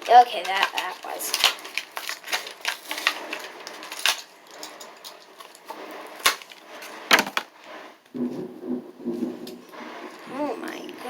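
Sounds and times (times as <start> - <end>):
plastic blister pack crackling: 0.0 - 7.7.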